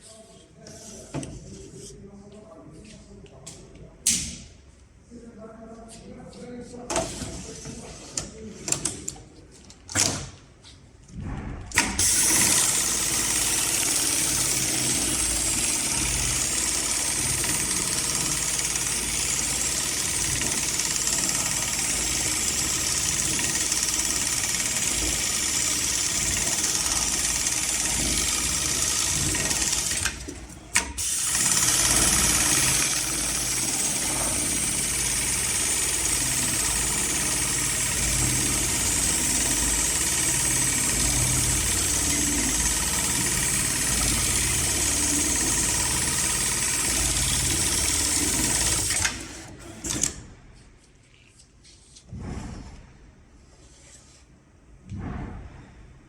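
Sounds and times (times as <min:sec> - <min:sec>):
industrial sewing machine running: 0:11.8 - 0:50.2.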